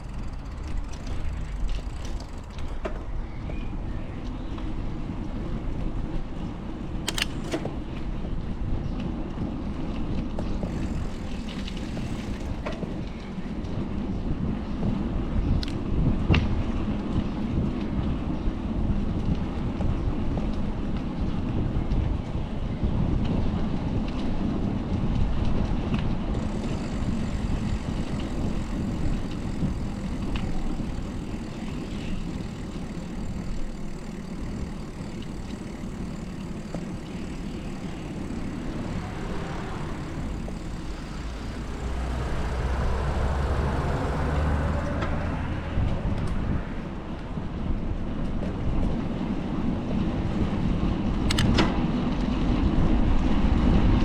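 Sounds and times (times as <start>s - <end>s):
heavy vehicle passing: 0.0s - 3.0s, 26.2s - 47.0s
road and wind rumble: 0.0s - 54.0s
sharp clicks: 26.4s - 42.9s.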